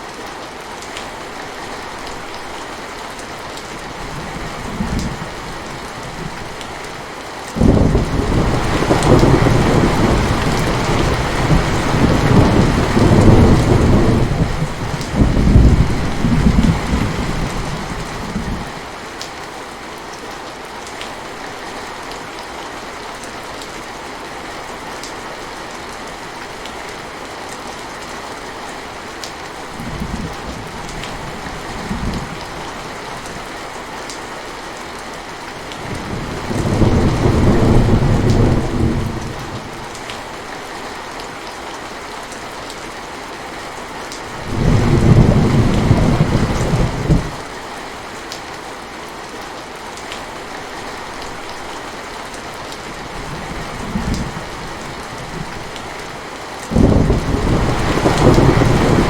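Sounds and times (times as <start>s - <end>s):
steady rain: 0.0s - 59.0s
rolling thunder: 7.6s - 18.7s, 35.8s - 39.7s, 44.4s - 47.4s, 56.7s - 59.0s.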